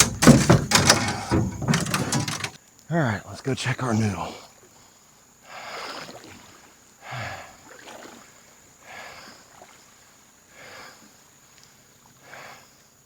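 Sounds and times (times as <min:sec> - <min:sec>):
canoe paddle strokes in water: 0:07.6 - 0:08.5.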